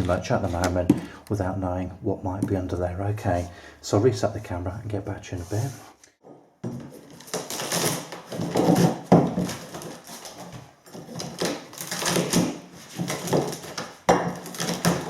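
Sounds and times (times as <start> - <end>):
hand tools knocking and scraping wood: 0.0 - 1.2, 6.2 - 15.0.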